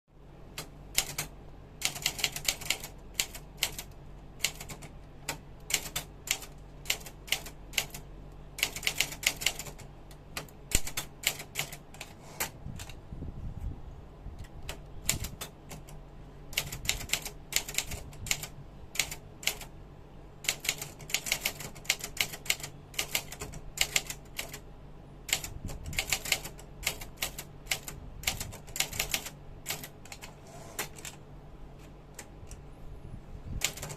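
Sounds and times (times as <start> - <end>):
typewriter keystrikes: 0.6 - 8.0, 8.6 - 9.8, 10.4 - 13.0, 16.5 - 19.7, 20.4 - 24.6, 25.3 - 31.2, 33.6 - 33.9.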